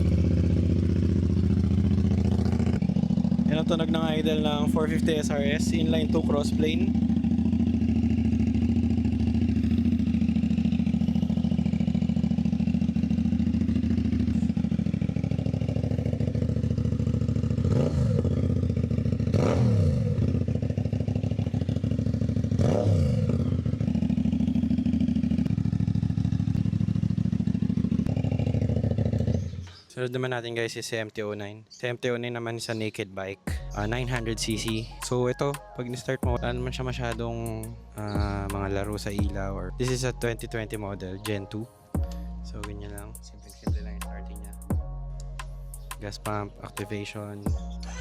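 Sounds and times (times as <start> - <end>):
motorcycle engine revving: 0.0 - 29.8, 36.2 - 40.7
motorcycle engine idling: 0.0 - 29.9, 33.5 - 35.5, 36.2 - 48.0.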